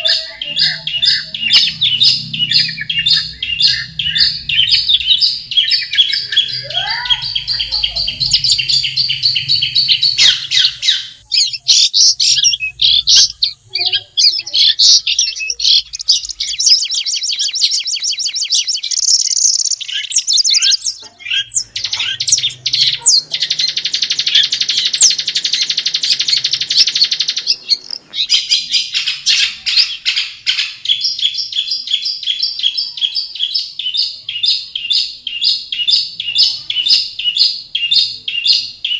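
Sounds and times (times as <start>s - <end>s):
shrike singing chattering notes: 0.0s - 28.4s
buzzy bird trill: 0.0s - 30.1s.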